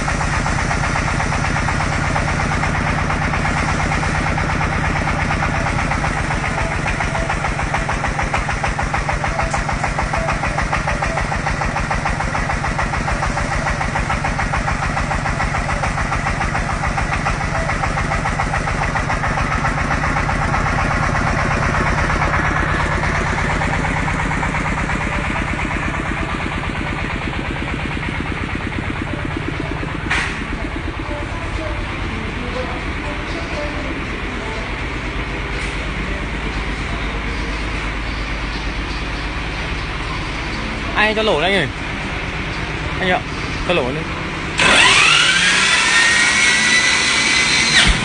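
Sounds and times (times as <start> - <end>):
drilling machine engine running: 0.0 - 48.0.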